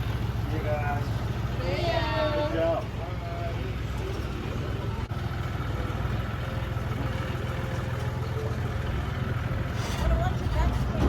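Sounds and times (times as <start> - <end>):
tractor engine running: 0.0 - 11.0.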